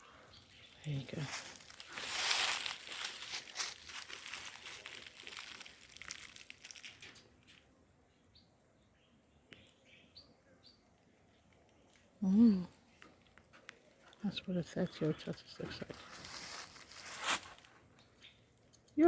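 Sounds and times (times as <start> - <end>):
crinkly rustling and scraping: 0.5 - 7.7, 15.6 - 18.1.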